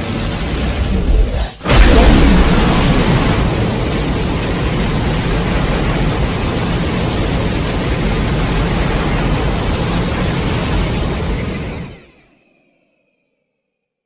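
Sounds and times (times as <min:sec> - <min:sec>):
loud rushing noise: 0:00.0 - 0:12.0
deep rumble: 0:00.1 - 0:07.2.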